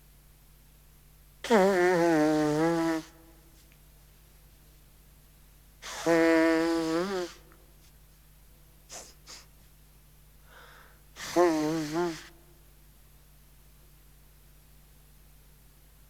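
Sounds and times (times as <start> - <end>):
faint puffs: 8.9 - 9.7.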